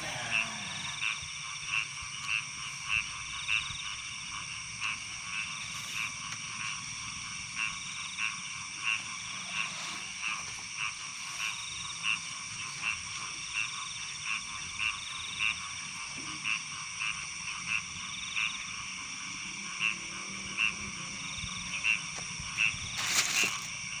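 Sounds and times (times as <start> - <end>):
frog croaking: 0.0 - 24.0.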